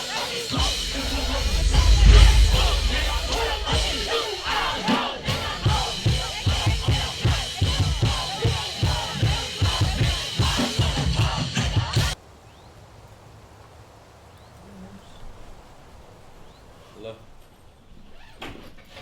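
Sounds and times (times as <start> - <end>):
crowd yelling: 0.0 - 12.2
loud music with drum beat: 0.0 - 12.2.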